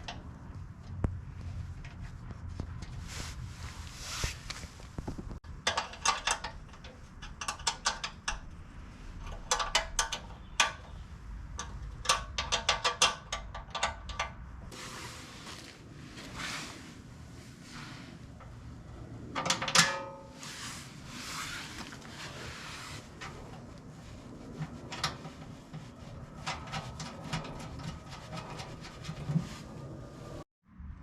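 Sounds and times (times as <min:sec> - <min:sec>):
soft rustle: 0:01.2 - 0:05.4, 0:14.7 - 0:18.9, 0:20.4 - 0:26.4.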